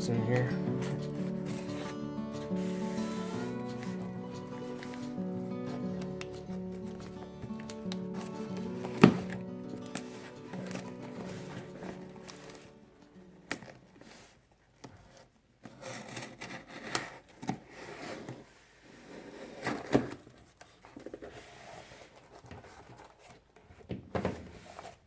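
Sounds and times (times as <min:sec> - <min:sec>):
tape and cardboard tearing: 0:00.4 - 0:12.7, 0:15.7 - 0:18.4.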